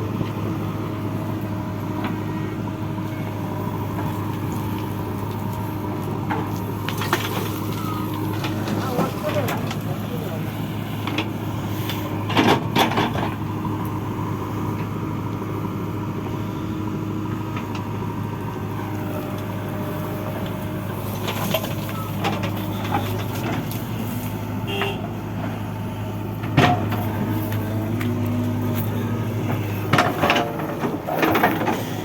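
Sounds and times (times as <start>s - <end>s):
diesel engine running: 0.0s - 32.0s
metal clanks and knocks: 26.4s - 27.2s, 29.4s - 31.8s.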